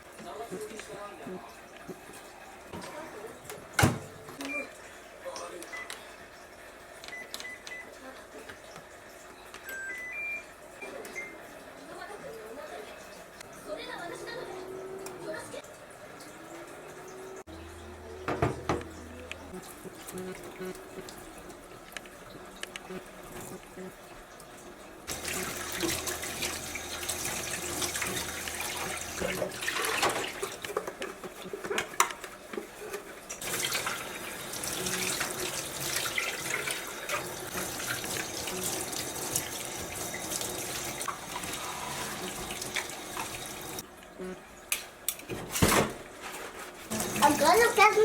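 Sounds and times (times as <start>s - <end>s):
tap water running into sink: 15.0s - 44.1s, 46.9s - 48.0s.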